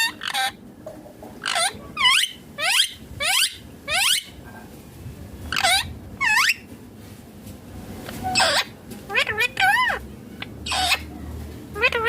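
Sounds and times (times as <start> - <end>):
parakeet shrill calls: 0.0 - 0.6, 1.4 - 4.4, 5.5 - 6.7, 8.3 - 11.1, 11.8 - 12.0.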